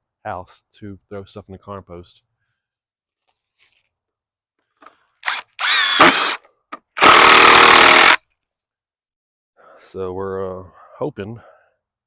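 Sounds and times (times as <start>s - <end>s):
power drill driving screws: 5.2s - 8.2s.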